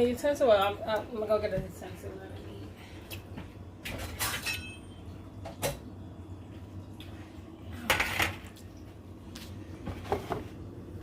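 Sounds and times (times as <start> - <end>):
metal utensils and dishes clinking: 3.8 - 5.0.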